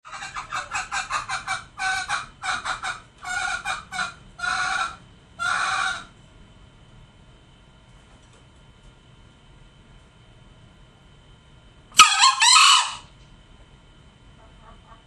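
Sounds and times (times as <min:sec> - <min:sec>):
junglefowl calling: 0:00.1 - 0:06.1, 0:12.0 - 0:13.1.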